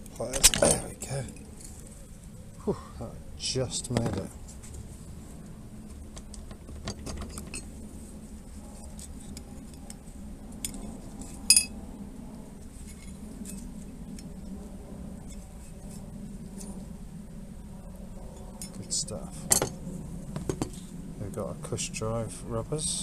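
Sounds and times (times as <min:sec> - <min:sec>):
loud ringing metal clink: 0:11.5 - 0:11.7.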